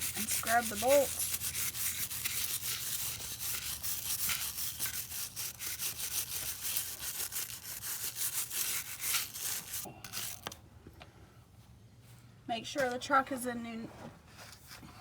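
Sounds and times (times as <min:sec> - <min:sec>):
wire brush scrubbing metal: 0:00.0 - 0:10.5.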